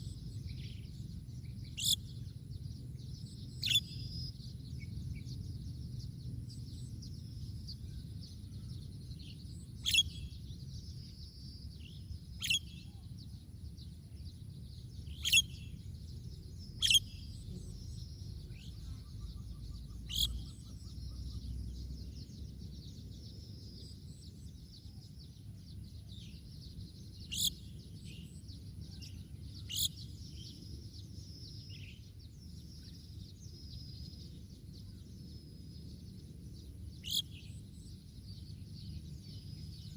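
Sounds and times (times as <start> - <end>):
birds chirping and twittering: 0.0 - 39.9
low wind rumble: 0.0 - 39.9
loud sharp bird calls: 9.8 - 10.4, 12.4 - 13.0, 15.1 - 15.7, 16.8 - 17.3, 18.5 - 21.5, 27.2 - 27.8, 37.0 - 37.5.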